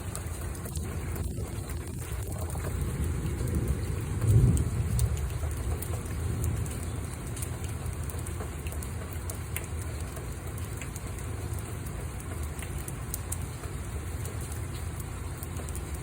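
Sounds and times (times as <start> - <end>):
sharp raindrops striking: 0.0 - 16.0
steady rain: 0.0 - 16.0.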